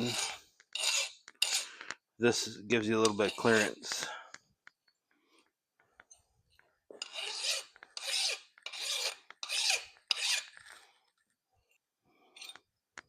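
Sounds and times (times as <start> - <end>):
hand file rasping on metal: 0.0 - 1.8, 3.0 - 3.9, 7.0 - 10.8.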